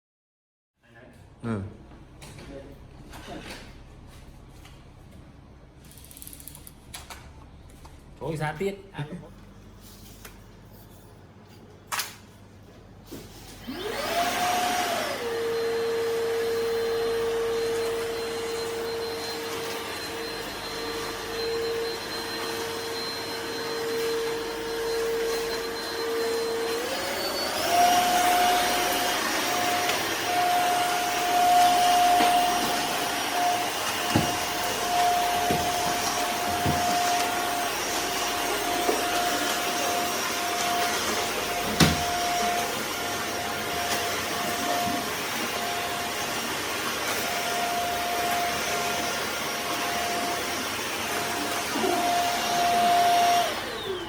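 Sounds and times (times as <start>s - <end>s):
vacuum cleaner motor whine: 13.1s - 54.0s.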